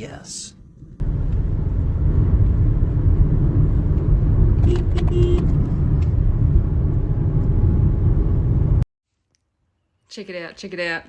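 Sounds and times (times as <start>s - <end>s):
moving car rumble: 0.1s - 8.9s.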